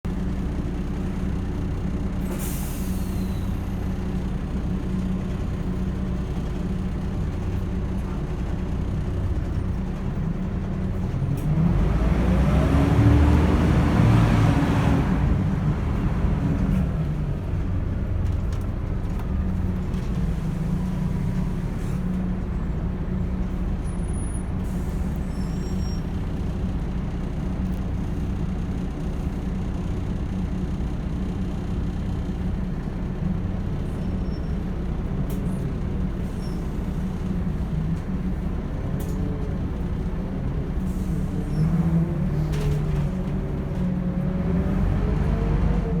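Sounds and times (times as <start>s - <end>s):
bus engine running: 0.0s - 46.0s
air brake hiss: 2.2s - 3.6s, 24.2s - 26.1s, 40.8s - 41.6s.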